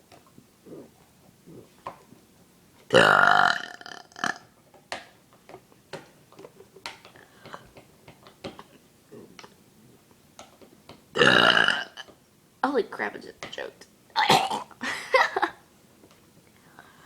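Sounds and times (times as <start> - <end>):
girl burping: 2.9 - 4.4, 11.2 - 12.1, 14.2 - 14.8.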